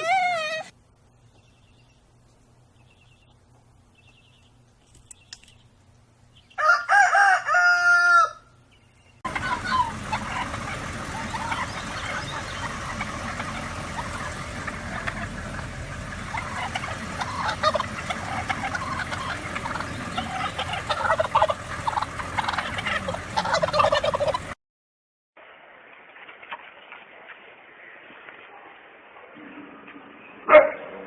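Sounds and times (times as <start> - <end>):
turkeys gobbling: 0.0 - 0.7, 9.2 - 24.6.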